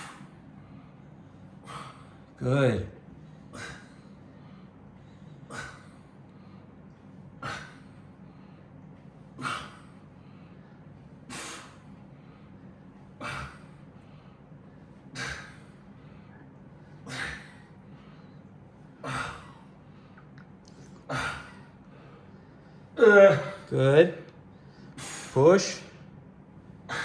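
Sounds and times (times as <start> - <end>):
man exhaling sharply: 25.0 - 25.4.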